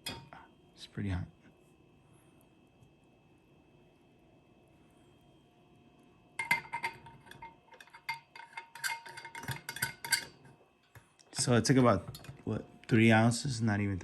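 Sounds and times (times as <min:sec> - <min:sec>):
dishware clinking: 0:00.0 - 0:00.3, 0:06.4 - 0:10.4, 0:11.4 - 0:12.4.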